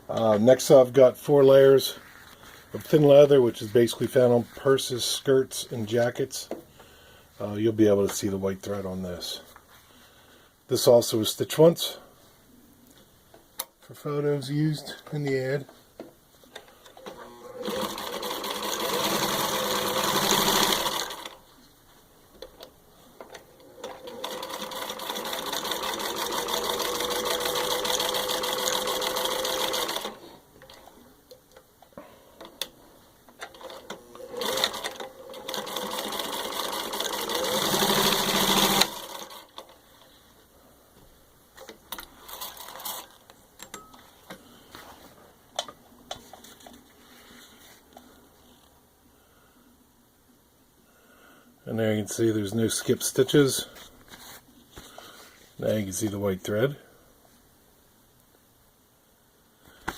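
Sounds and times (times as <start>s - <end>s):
sewing machine stitching leather: 17.0s - 21.4s, 23.3s - 30.8s, 33.4s - 39.8s.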